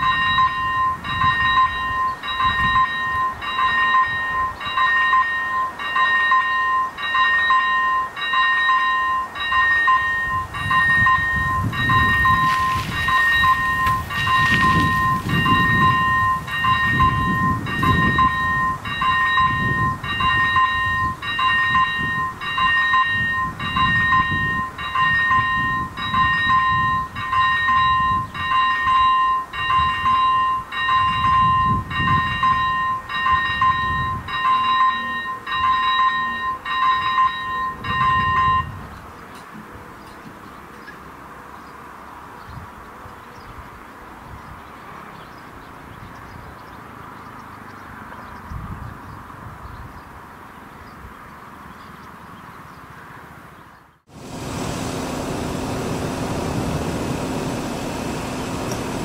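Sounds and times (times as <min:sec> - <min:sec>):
level crossing warning bell: 0:00.0 - 0:40.2
train rumbling past: 0:00.0 - 0:41.4, 0:54.1 - 0:59.0.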